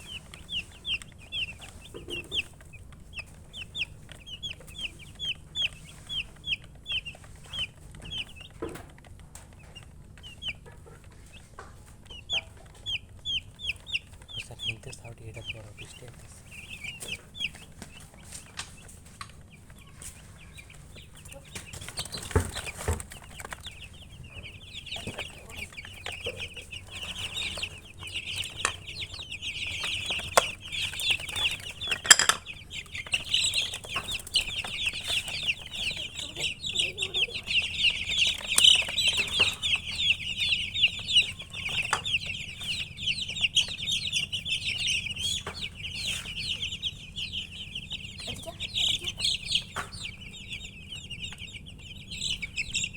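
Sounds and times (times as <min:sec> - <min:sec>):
baby chicks peeping: 0:00.0 - 0:52.9
sharp knocks: 0:24.9 - 0:35.3.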